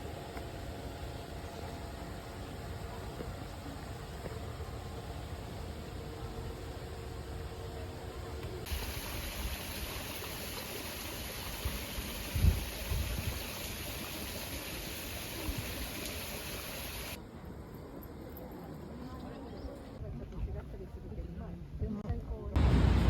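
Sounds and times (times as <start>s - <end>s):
flowing stream water: 8.7s - 17.2s.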